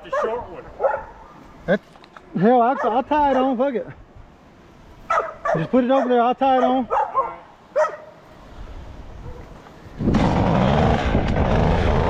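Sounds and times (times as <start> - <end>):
chainsaw running: 10.1 - 12.0.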